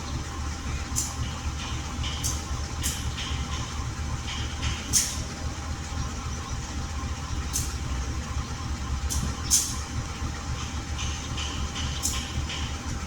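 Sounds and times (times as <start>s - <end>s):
train rumble: 0.0s - 13.0s.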